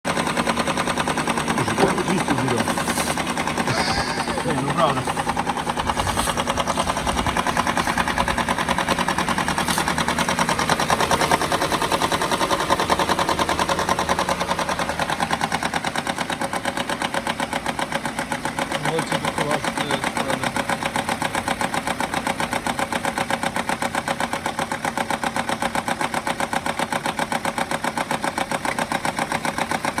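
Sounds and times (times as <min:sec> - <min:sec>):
engine idling with clatter: 0:00.1 - 0:30.0.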